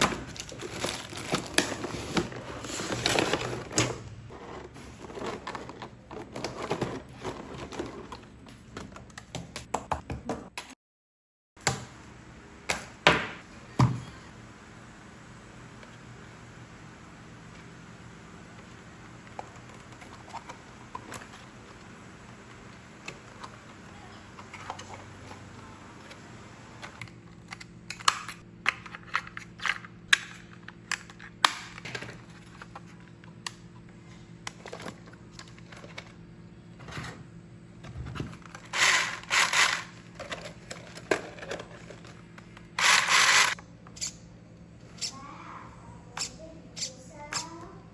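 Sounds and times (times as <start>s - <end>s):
rustling scrapes: 0.4s - 8.2s, 42.8s - 44.1s.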